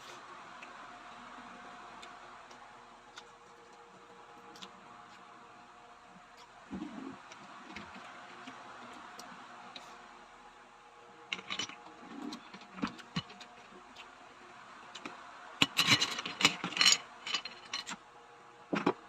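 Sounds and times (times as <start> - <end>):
shells and utensils clattering: 15.6 - 18.0.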